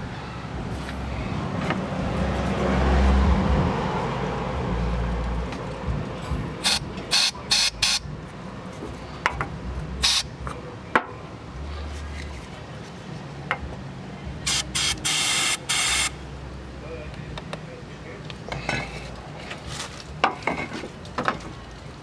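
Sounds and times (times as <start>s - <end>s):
spray bottle squirts: 6.6s - 8.0s, 10.0s - 10.2s, 14.5s - 16.1s.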